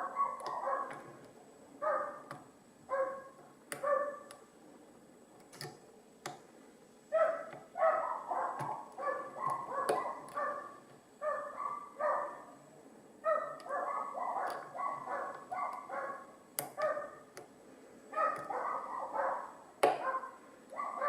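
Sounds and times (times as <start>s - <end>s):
dogs barking: 0.0s - 1.0s, 1.8s - 2.3s, 2.9s - 4.3s, 7.1s - 12.5s, 13.2s - 17.2s, 18.1s - 21.0s
sharp clicks: 16.5s - 17.6s.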